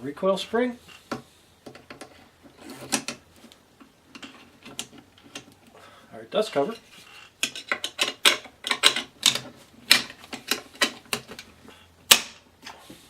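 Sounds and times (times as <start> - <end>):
rifle parts clicking and clacking: 6.6 - 11.5.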